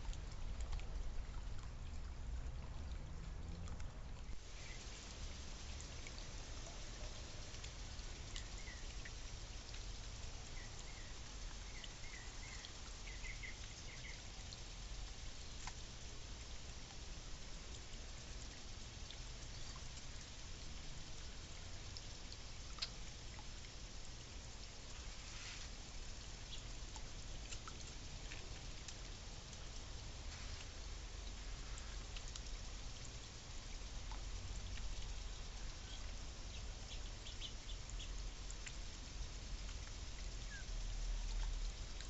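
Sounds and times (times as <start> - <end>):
steady rain-like hiss: 0.0 - 42.0
faint bird chirps: 4.5 - 5.0, 8.2 - 9.0, 10.4 - 14.5, 35.6 - 38.2, 40.4 - 40.8.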